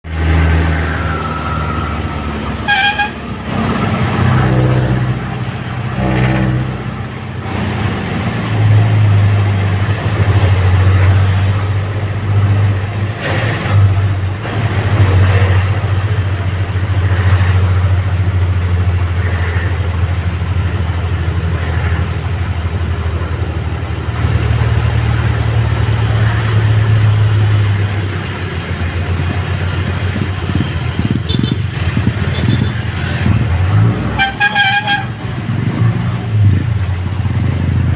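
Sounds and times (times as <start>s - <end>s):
vehicle engine humming: 0.0s - 37.9s
short horn toot: 2.6s - 3.4s, 34.1s - 35.2s.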